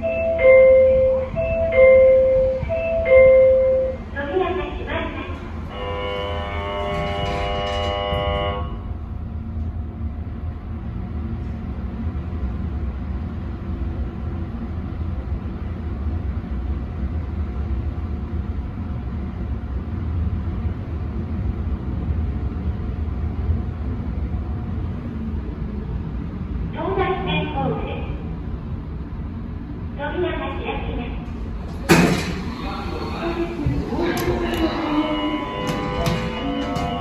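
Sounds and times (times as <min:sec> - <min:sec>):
elevator hum and rumble: 0:00.0 - 0:37.0
elevator door buzzer: 0:05.6 - 0:09.0, 0:31.6 - 0:37.0.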